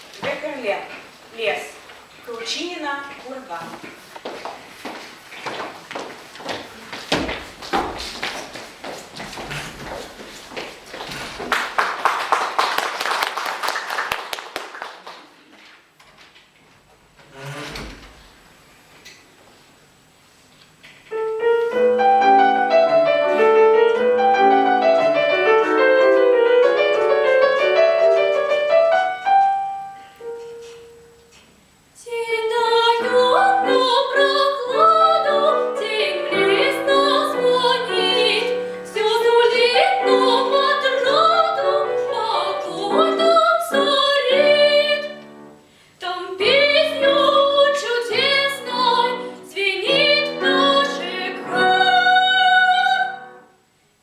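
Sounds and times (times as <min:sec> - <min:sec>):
piano playing: 0:21.1 - 0:31.4, 0:32.8 - 0:45.7, 0:46.4 - 0:53.6
girl singing: 0:32.0 - 0:45.2, 0:46.0 - 0:53.4.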